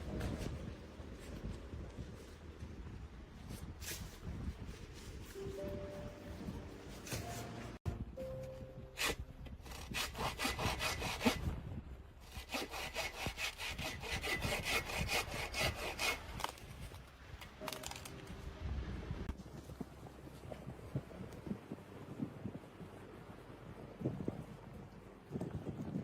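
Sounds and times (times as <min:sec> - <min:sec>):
hand saw cutting wood: 0:09.0 - 0:11.5, 0:12.2 - 0:16.6.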